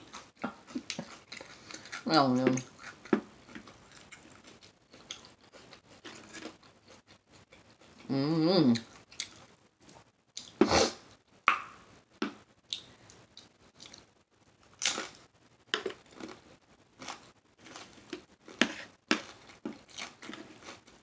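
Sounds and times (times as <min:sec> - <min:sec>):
crunchy chewing: 0:00.0 - 0:08.1, 0:08.8 - 0:10.6, 0:15.8 - 0:21.0
wet mouth smacking: 0:11.5 - 0:11.8.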